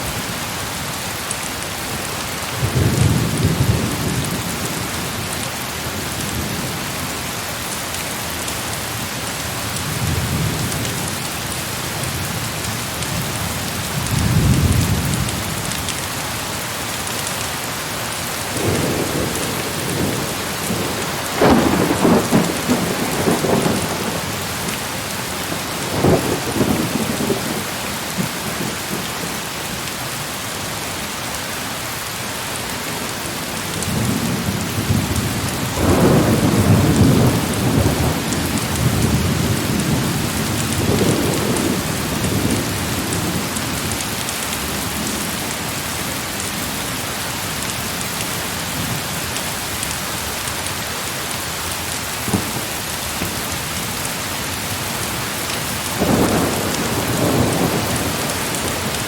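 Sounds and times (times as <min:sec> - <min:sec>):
heavy rain falling: 0:00.0 - 0:59.0
thunder rumbling: 0:18.5 - 0:29.4, 0:33.7 - 0:43.8, 0:52.2 - 0:59.0.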